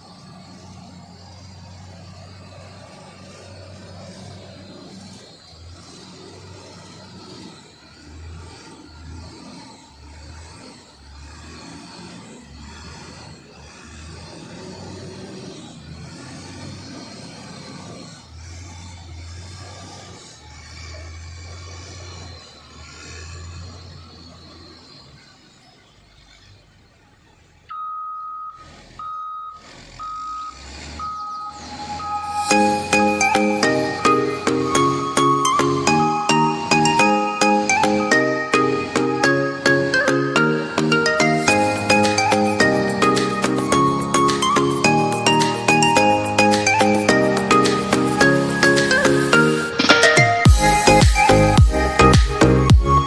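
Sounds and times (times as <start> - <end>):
diesel engine humming: 0.0 - 53.0
reversing alarm beeping: 27.7 - 53.0.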